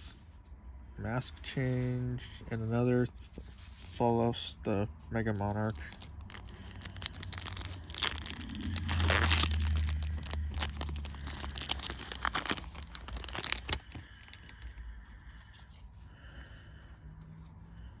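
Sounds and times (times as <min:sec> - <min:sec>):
foil wrapper tearing and crinkling: 0:05.5 - 0:14.8.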